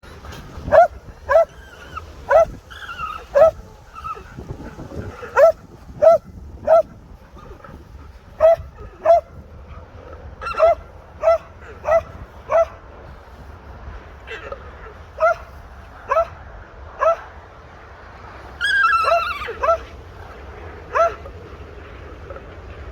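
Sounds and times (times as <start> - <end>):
alpaca alarm calls: 18.6 - 20.0.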